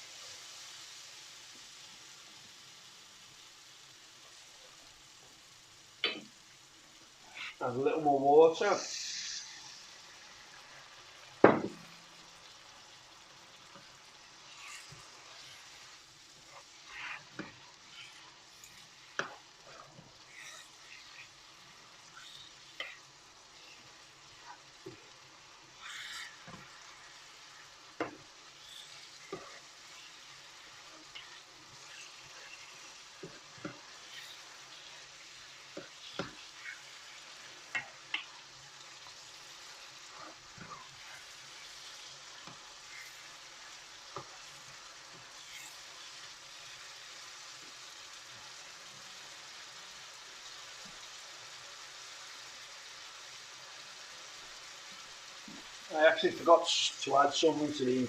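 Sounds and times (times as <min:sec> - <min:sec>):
food sizzling in a pan: 0:00.0 - 0:58.0
spoon scraping a pan: 0:13.7 - 0:46.9.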